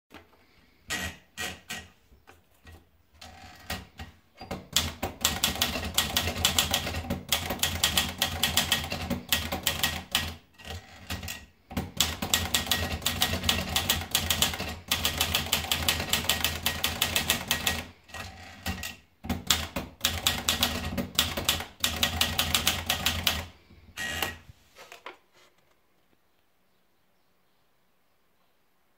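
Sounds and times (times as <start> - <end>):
manual typewriter typing: 2.6 - 24.4.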